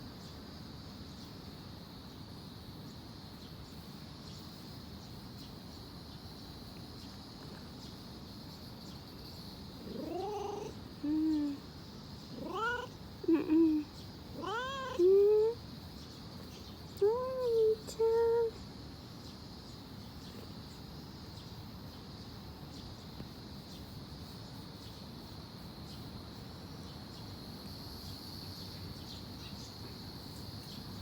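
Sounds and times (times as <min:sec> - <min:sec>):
faint steady hiss: 0:00.0 - 0:31.0
cat meowing: 0:09.8 - 0:11.6, 0:12.3 - 0:15.6.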